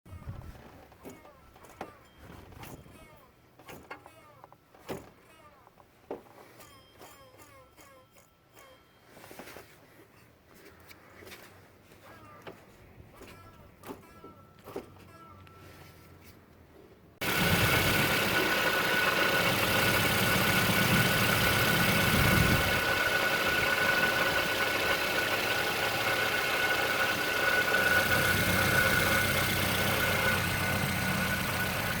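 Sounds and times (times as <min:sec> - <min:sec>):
car engine idling: 0:17.2 - 0:32.0
grinding noise: 0:17.2 - 0:32.0.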